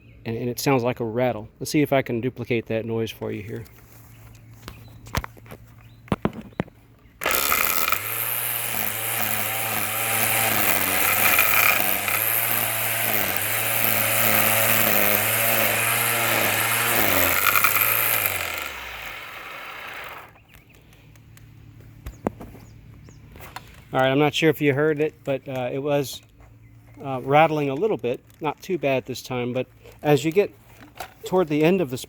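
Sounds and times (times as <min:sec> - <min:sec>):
spool head rattling: 0:07.2 - 0:20.4
string trimmer running: 0:07.2 - 0:20.4.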